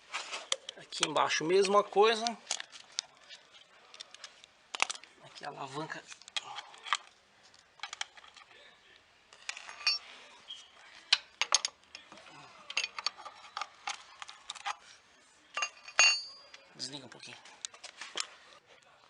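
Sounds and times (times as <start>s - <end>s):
metal parts clinking: 9.4s - 10.0s, 12.7s - 13.7s, 15.6s - 16.5s.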